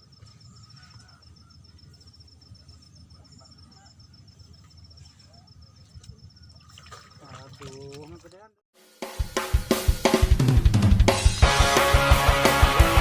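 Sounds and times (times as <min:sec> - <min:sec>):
faint bird chirps: 0:00.0 - 0:07.3.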